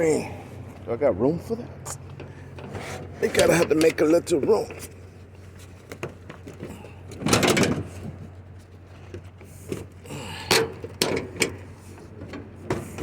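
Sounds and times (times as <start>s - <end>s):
scrap items scraping: 2.6s - 3.8s.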